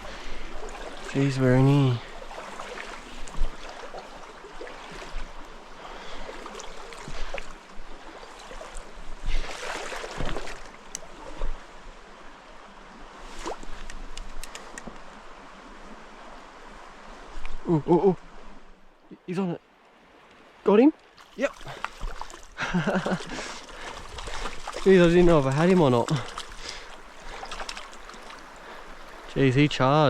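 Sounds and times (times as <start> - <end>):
stream water running: 0.0 - 30.0
small clicks and knocks: 13.8 - 15.0.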